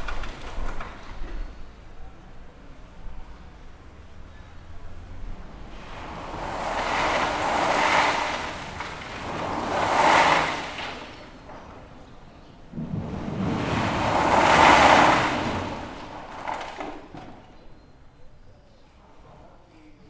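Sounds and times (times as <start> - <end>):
rubble sliding and rattling: 0.0 - 19.5.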